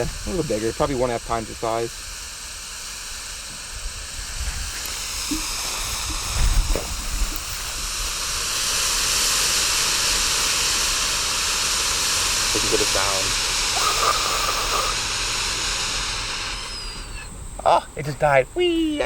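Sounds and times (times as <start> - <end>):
smoke firework hissing: 0.0 - 19.0
wind rumble on microphone: 3.7 - 8.1.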